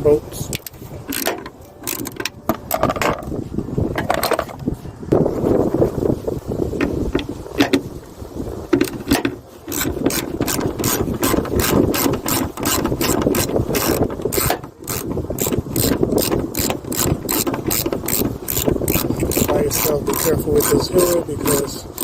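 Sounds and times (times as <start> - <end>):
socket ratchet clicking: 0.6 - 2.9, 9.7 - 22.0.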